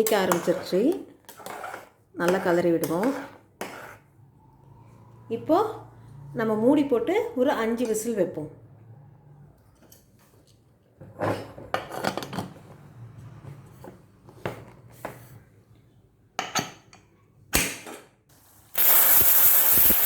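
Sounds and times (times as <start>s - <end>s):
pressure cooker whistle: 18.8s - 20.0s.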